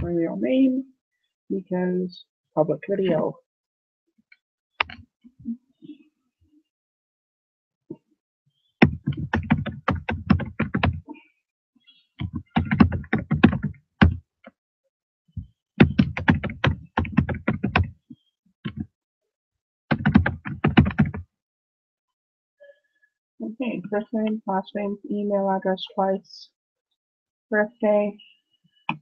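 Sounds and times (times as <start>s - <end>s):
computer keyboard typing: 8.8s - 11.1s, 12.2s - 14.2s, 15.8s - 17.9s, 19.9s - 21.2s.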